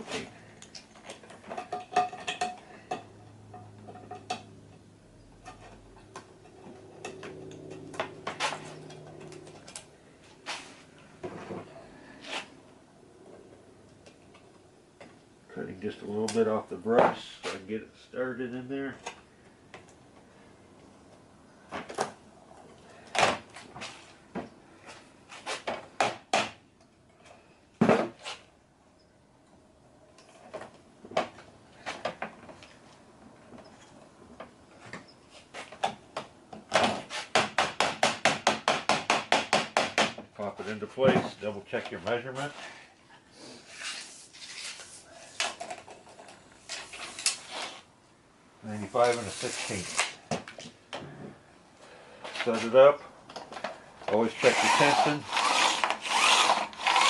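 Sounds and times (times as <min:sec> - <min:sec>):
low steady hum: 0:00.0 - 0:23.6.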